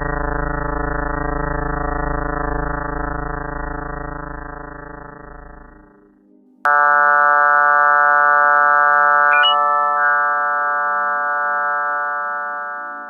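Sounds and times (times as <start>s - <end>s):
electronic drone of held tones: 0.0s - 13.0s
brief high chirp: 9.4s - 10.2s.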